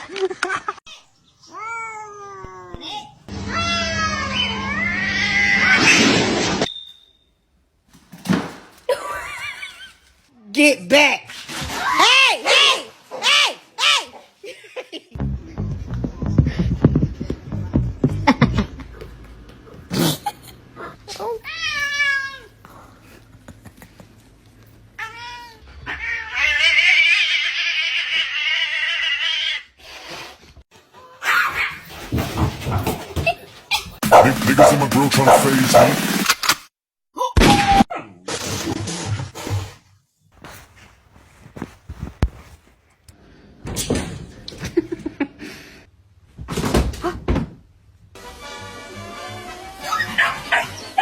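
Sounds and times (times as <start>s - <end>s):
cat yowling: 25.0s - 29.7s.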